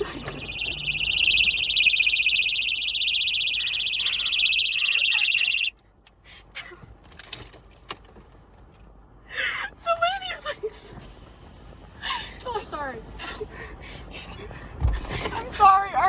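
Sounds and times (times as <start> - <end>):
shrill pulsing alarm siren: 0.0 - 5.7.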